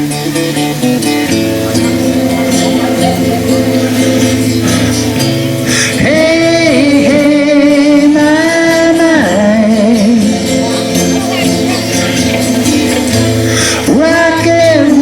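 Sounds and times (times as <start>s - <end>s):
live band with guitars and bass: 0.0s - 15.0s.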